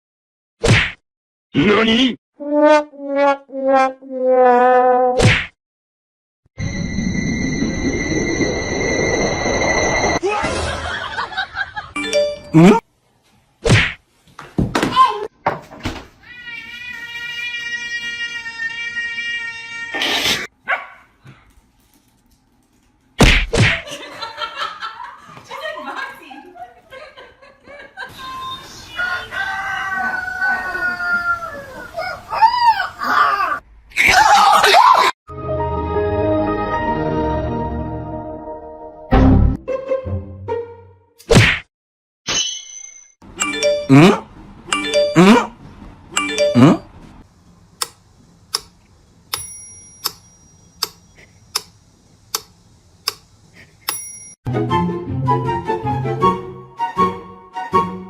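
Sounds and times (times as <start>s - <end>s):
music: 35.3s - 41.1s, 54.5s - 58.0s
bell-like ding: 49.4s - 50.8s, 53.9s - 54.4s.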